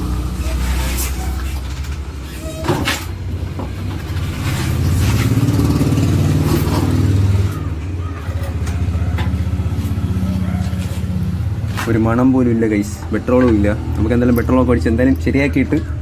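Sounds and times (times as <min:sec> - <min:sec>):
motorcycle engine being kicked over: 0:00.6 - 0:12.2.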